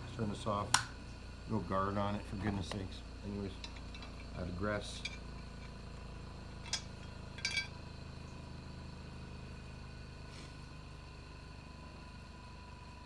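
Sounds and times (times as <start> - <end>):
low steady hum: 0.0 - 13.0
metal blade clinking: 6.7 - 7.7.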